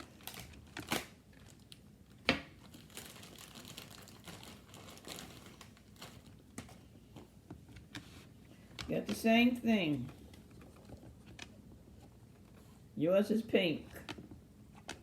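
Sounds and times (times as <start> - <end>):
plastic packaging crinkling: 0.0 - 6.9.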